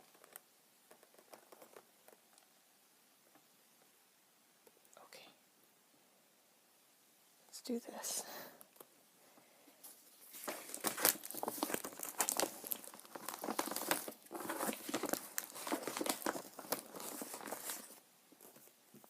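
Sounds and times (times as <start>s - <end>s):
packaging crinkling and tearing: 10.2s - 18.6s.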